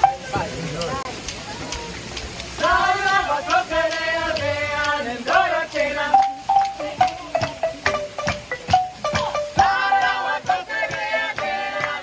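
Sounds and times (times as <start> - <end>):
marimba band playing: 0.0 - 1.0, 5.2 - 12.0
voices singing: 2.6 - 12.0.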